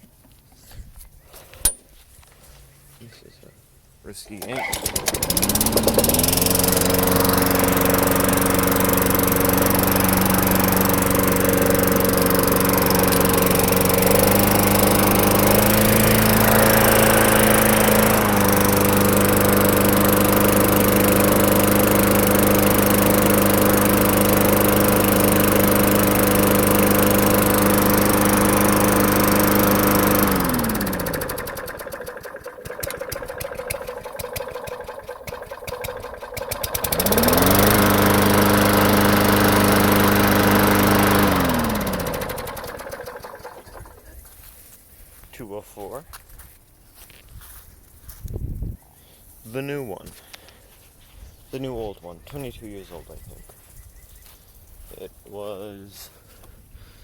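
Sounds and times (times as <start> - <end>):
lawn mower engine running: 4.2 - 44.6.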